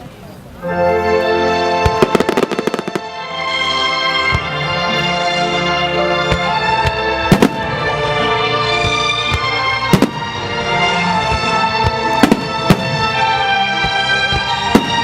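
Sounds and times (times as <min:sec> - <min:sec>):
music with long held notes: 0:00.5 - 0:15.0
fireworks bangs: 0:01.8 - 0:03.2, 0:06.3 - 0:08.0, 0:08.7 - 0:15.0.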